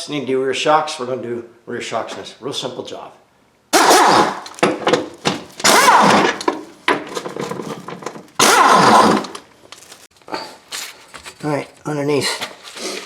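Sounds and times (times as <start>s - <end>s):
impact wrench bursts: 3.8s - 7.4s, 8.4s - 9.4s.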